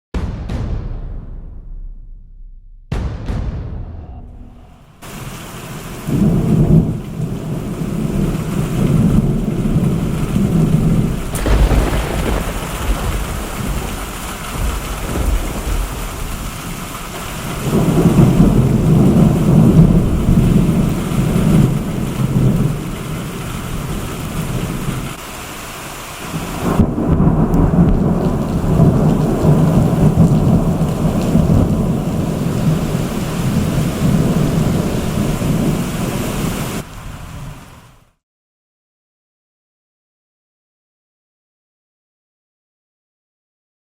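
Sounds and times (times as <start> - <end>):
sharp thunder crack: 0.1 - 25.3, 26.3 - 35.8
rolling thunder: 0.2 - 25.6, 26.2 - 37.5
steady rain: 5.0 - 38.2.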